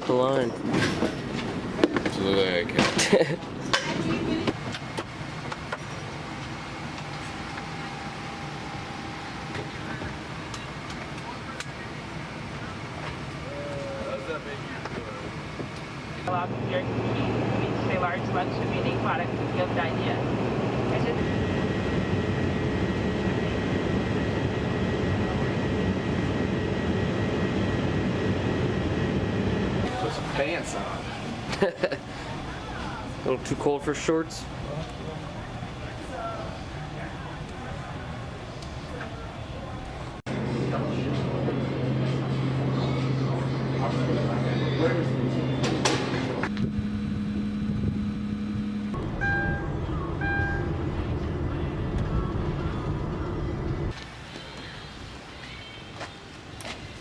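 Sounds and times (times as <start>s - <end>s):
jet airliner cabin drone: 0.4s - 57.0s
moving vehicle rumble: 34.4s - 57.0s
short electronic beeps: 49.2s - 50.8s.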